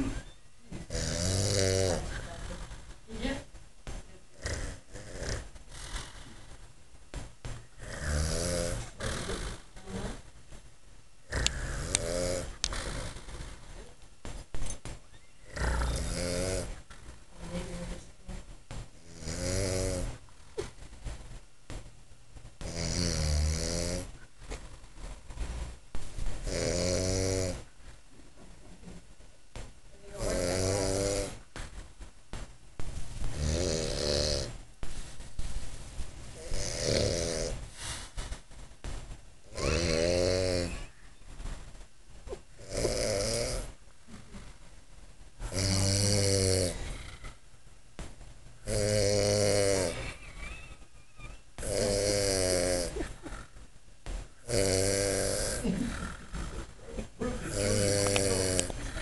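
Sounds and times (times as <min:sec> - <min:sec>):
man snoring: 0:00.9 - 0:02.1, 0:04.4 - 0:06.2, 0:07.8 - 0:09.6, 0:11.3 - 0:13.5, 0:15.5 - 0:16.8, 0:19.1 - 0:20.2, 0:22.6 - 0:24.1, 0:26.5 - 0:27.6, 0:30.2 - 0:31.4, 0:33.3 - 0:34.5, 0:36.4 - 0:37.6, 0:39.5 - 0:40.8, 0:42.6 - 0:43.7, 0:45.5 - 0:47.3, 0:48.6 - 0:50.0, 0:51.6 - 0:53.0, 0:54.4 - 0:56.6, 0:57.4 - 0:58.8.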